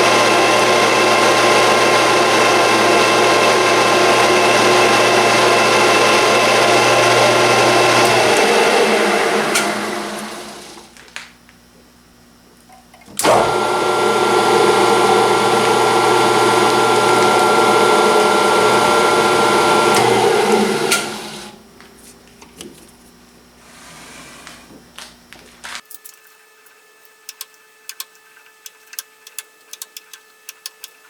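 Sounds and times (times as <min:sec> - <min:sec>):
metal lathe running with high whine: 0:00.0 - 0:10.9, 0:13.2 - 0:21.7.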